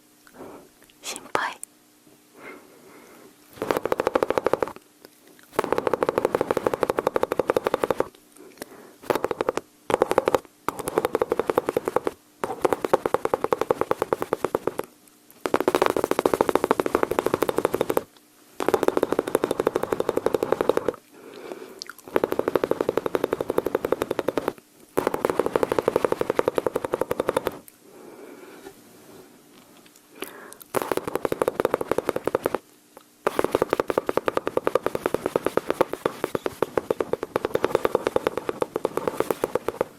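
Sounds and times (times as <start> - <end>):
mouth imitating machine-gun fire: 3.6 - 4.8, 5.5 - 8.1, 9.0 - 21.0, 22.1 - 27.6, 30.7 - 32.6, 33.2 - 39.9.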